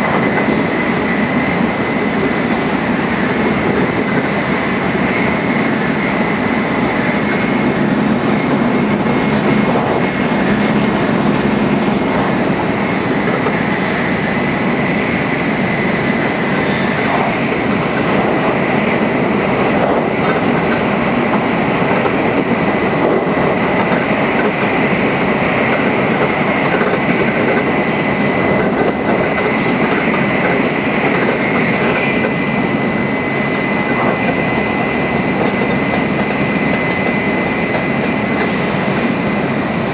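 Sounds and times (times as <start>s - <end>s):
high-pitched whine: 0.0s - 15.9s
high-speed train rumble: 0.0s - 39.9s.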